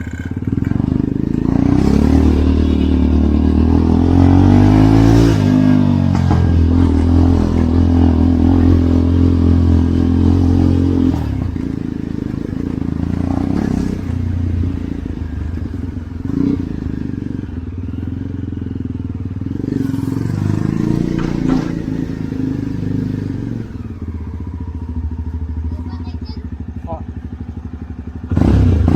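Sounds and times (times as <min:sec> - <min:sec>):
motorcycle engine running: 0:00.0 - 0:28.9
knocks and clatters: 0:05.5 - 0:09.2, 0:20.1 - 0:22.2.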